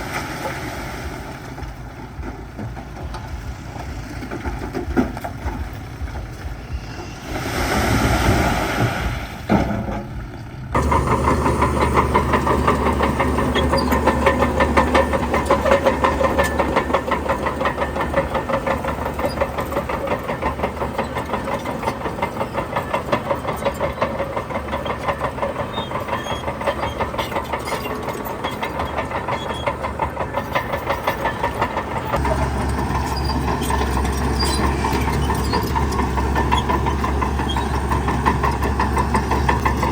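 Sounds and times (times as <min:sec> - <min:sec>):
heavy diesel engine knocking: 0:00.0 - 0:07.4, 0:09.6 - 0:39.9
loud rushing hiss: 0:06.6 - 0:09.4.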